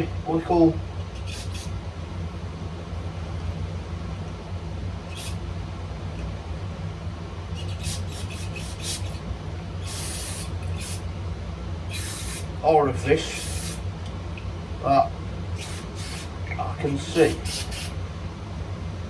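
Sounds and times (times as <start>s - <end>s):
steady low hum: 0.0s - 19.0s
aerosol can squirts: 1.2s - 1.7s, 5.1s - 5.4s, 7.6s - 9.2s, 9.8s - 11.0s, 11.9s - 12.5s, 13.3s - 13.8s, 15.6s - 16.3s, 17.2s - 18.0s.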